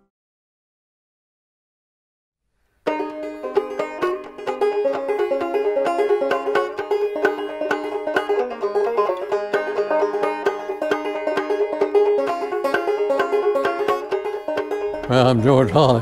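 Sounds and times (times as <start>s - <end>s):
banjo picking: 2.8s - 16.0s.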